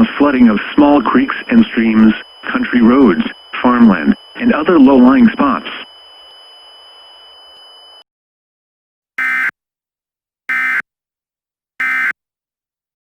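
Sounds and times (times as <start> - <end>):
steady hiss with high whine: 0.0 - 8.0
harsh digital squawks: 9.2 - 9.5, 10.5 - 10.8, 11.8 - 12.2.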